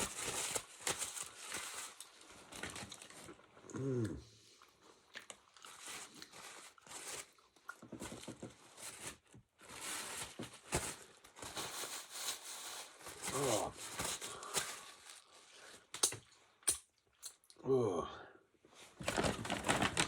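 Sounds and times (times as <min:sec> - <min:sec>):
person chewing crunchy food: 0:03.5 - 0:06.3.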